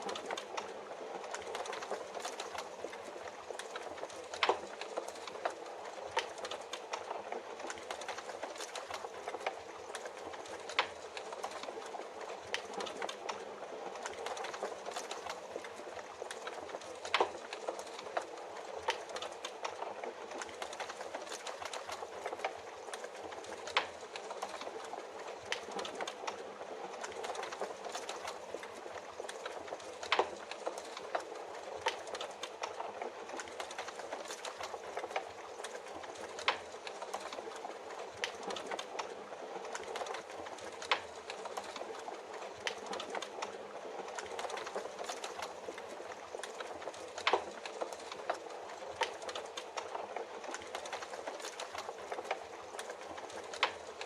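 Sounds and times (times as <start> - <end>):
wood fire crackling: 0.0 - 54.0.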